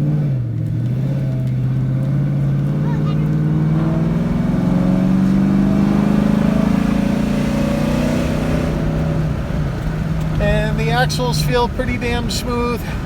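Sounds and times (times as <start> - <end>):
car engine accelerating: 0.0 - 13.0.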